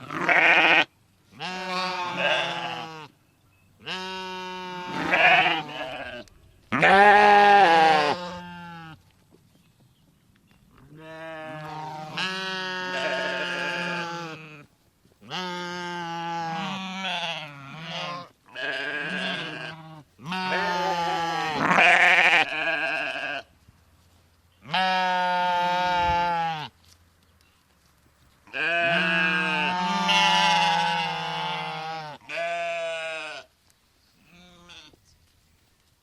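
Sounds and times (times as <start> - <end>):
sheep bleating: 0.0 - 3.1, 3.8 - 9.0, 10.9 - 23.5, 24.6 - 26.7, 28.5 - 33.5, 34.3 - 35.0.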